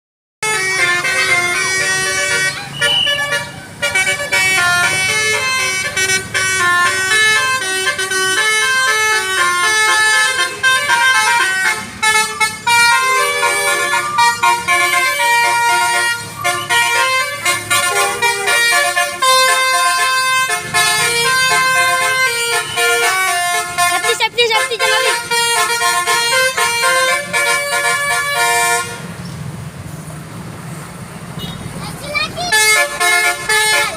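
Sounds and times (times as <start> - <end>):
multi-tone bus horn tune: 0.4 - 29.2, 32.3 - 33.9.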